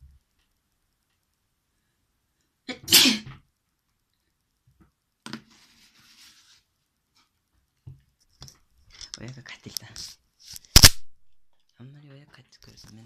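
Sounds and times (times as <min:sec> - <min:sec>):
person sneezing: 0:02.7 - 0:03.4.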